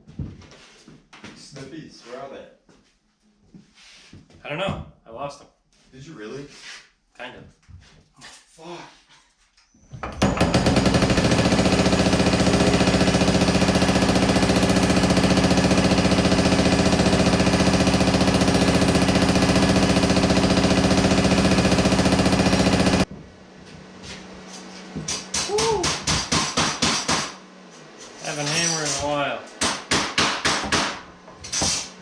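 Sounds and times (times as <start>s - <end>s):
power hammer pounding metal: 10.2s - 23.1s, 25.1s - 27.4s, 28.4s - 31.9s.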